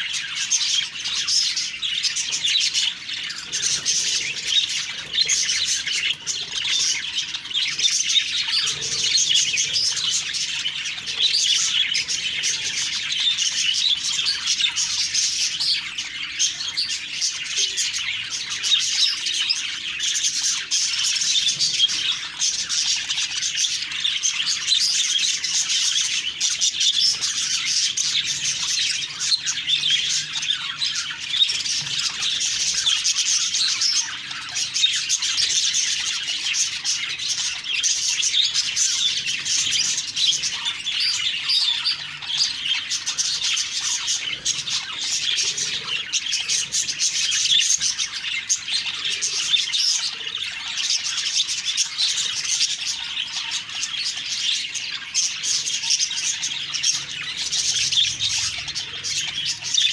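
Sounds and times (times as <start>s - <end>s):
budgerigars chirping and squawking: 0.0s - 59.9s.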